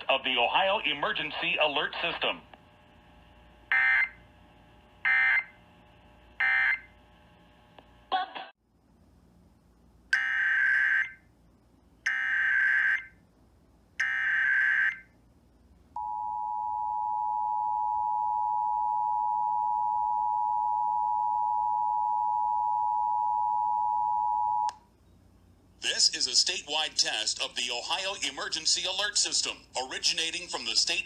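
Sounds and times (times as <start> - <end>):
two-tone alarm signal: 3.7 - 4.2, 5.0 - 5.5, 6.4 - 6.9, 10.2 - 11.2, 14.0 - 15.1, 16.0 - 24.7.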